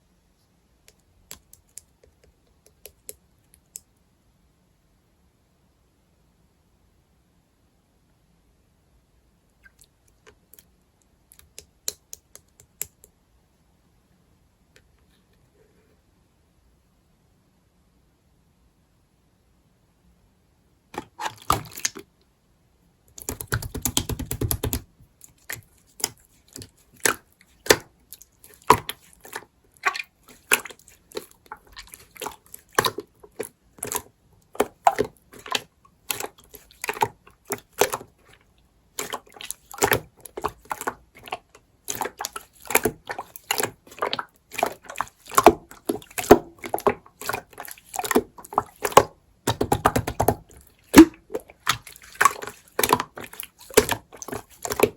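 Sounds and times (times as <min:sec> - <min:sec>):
slime squishing and popping: 0:23.2 - 0:38.3, 0:38.9 - 0:54.9.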